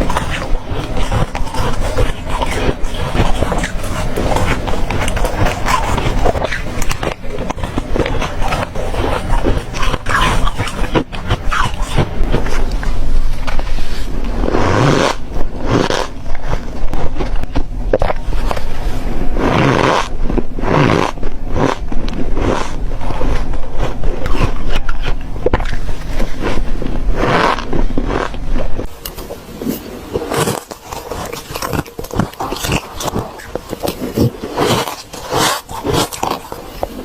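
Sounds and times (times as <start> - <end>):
ice being crunched: 0.0 - 18.8, 27.2 - 37.0.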